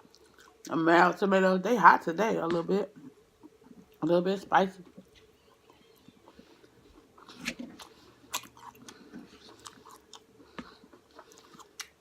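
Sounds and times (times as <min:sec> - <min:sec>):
close-up chewing with wet smacks: 0:05.1 - 0:12.0.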